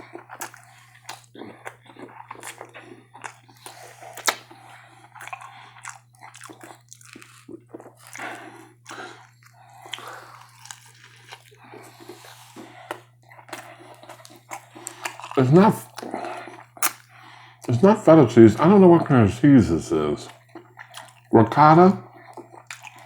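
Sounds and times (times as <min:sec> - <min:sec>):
person chewing and lip smacking: 0:00.0 - 0:17.8, 0:19.9 - 0:23.0
wet mouth clicks: 0:04.2 - 0:04.5, 0:16.8 - 0:17.0.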